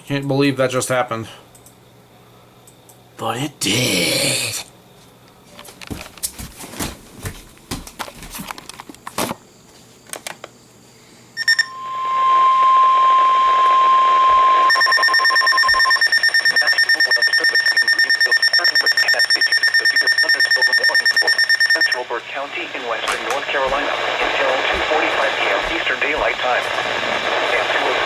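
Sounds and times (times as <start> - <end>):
steady alert tone: 11.4 - 16.2
rapid electronic alarm beep: 11.4 - 22.1.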